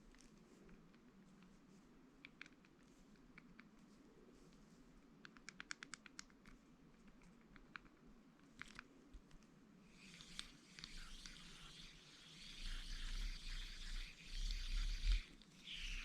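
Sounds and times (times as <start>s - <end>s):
spinning reel clicks: 9.9s - 16.0s.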